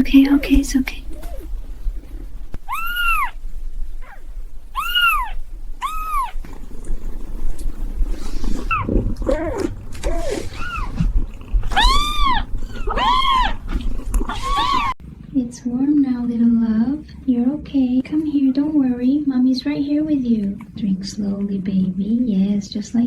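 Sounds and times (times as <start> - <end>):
low rumble: 0.0 - 20.1
kittens meowing: 2.6 - 6.5, 8.6 - 15.0.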